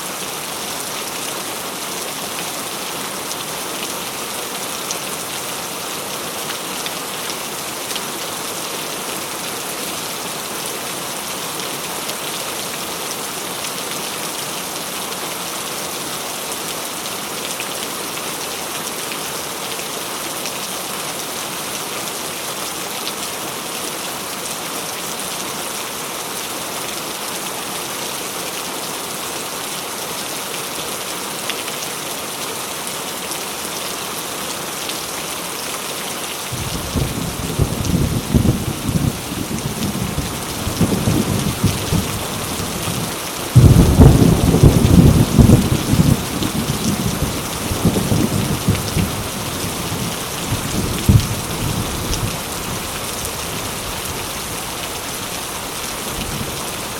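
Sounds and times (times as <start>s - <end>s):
heavy rain pattering: 36.3s - 56.9s.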